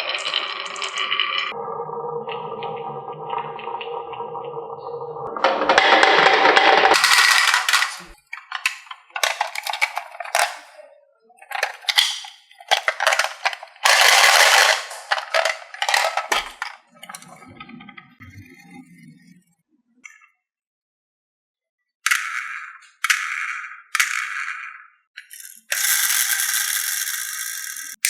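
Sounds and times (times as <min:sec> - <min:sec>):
marbles clattering down wooden run: 0:05.4 - 0:10.7, 0:11.5 - 0:17.3, 0:22.1 - 0:28.0.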